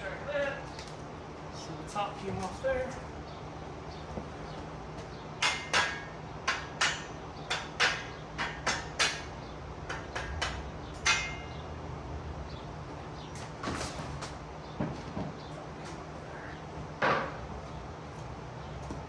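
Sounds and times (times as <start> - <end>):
sharp metal-on-metal knocks: 5.4 - 11.6.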